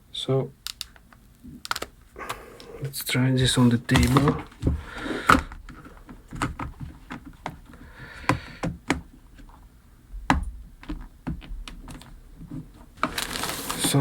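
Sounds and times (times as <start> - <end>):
plastic clicks and knocks: 3.9 - 9.6, 10.2 - 14.0.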